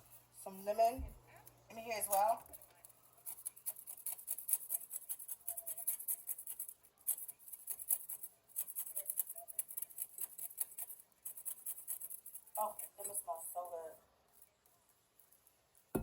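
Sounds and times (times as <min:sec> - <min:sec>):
lemon rasping on a grater: 0:02.0 - 0:13.0.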